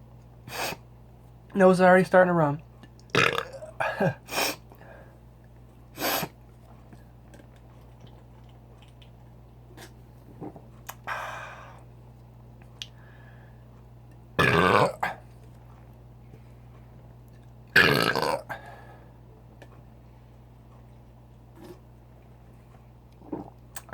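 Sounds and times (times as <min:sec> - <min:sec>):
man sniffing: 0:00.5 - 0:00.8, 0:03.9 - 0:04.6, 0:06.0 - 0:06.3
loud burp: 0:03.1 - 0:04.2, 0:14.4 - 0:15.2, 0:17.7 - 0:18.6.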